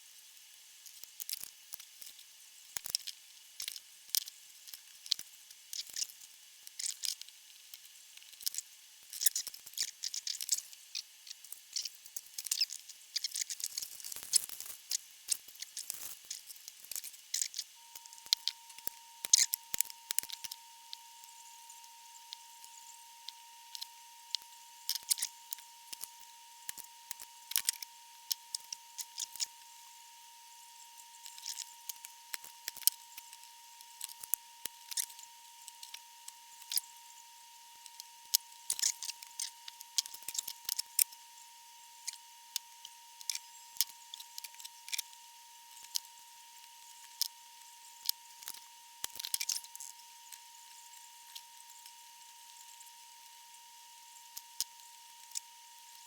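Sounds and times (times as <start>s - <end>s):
faint high whine: 17.8s - 56.0s.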